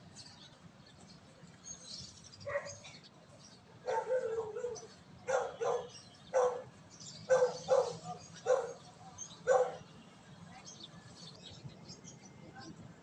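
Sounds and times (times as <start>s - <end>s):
dog barking: 2.5s - 2.8s, 3.8s - 6.7s, 7.3s - 8.8s, 9.4s - 9.9s.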